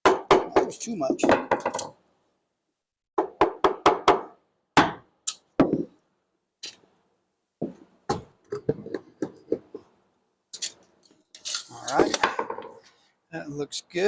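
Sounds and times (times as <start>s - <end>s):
hammer knocking wood: 3.2s - 5.0s, 5.6s - 5.9s.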